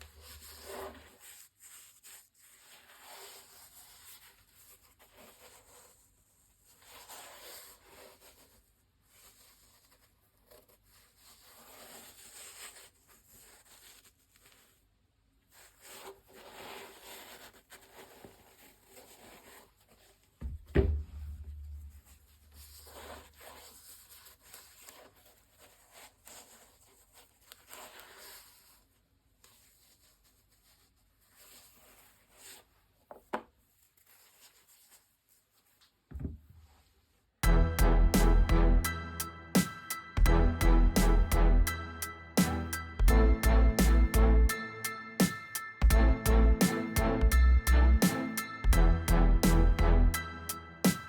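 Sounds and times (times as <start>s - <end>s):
heavy thump: 20.4s - 22.2s, 36.1s - 36.5s.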